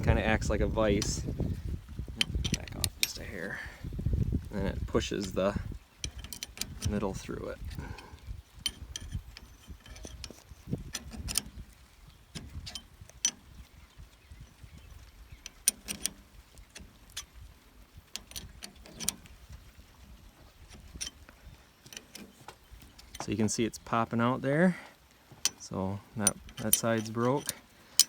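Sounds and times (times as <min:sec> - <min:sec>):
chain breaker metal clicks: 0:02.2 - 0:03.3, 0:05.1 - 0:11.7, 0:12.3 - 0:13.6, 0:15.4 - 0:23.3, 0:25.4 - 0:28.0.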